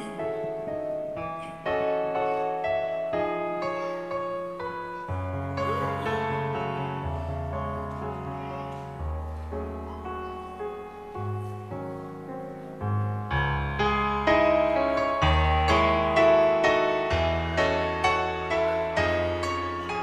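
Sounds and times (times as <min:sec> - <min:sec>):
slow piano chords: 0:00.0 - 0:20.0.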